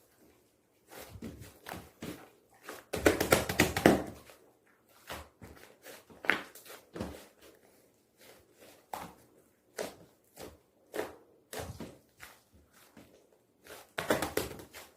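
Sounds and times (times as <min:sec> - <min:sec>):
slime squishing by hand: 0:00.2 - 0:14.9.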